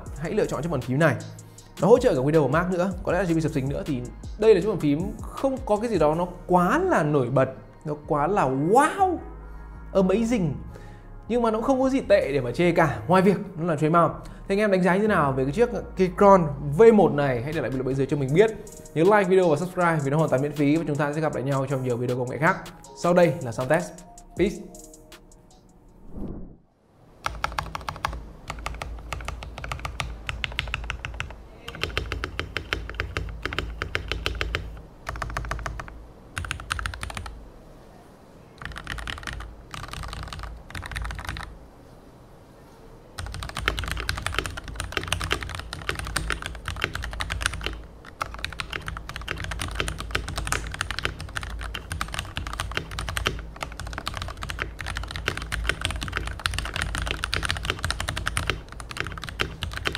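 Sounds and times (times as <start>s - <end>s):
mechanical keyboard typing: 27.2s - 37.3s, 38.6s - 41.5s, 43.2s - 59.9s.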